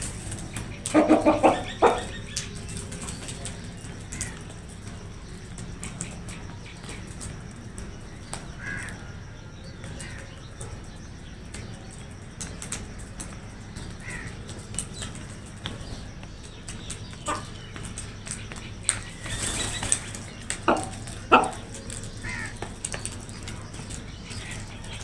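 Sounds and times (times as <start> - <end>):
crows cawing: 0.0 - 2.6, 3.8 - 4.6, 8.5 - 10.6, 14.0 - 14.6, 18.9 - 25.0.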